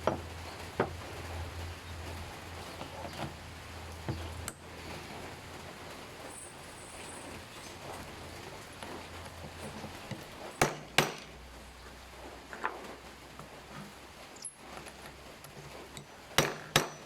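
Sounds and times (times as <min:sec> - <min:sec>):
hard knocks on metal mold: 0:10.6 - 0:11.3, 0:16.4 - 0:17.0.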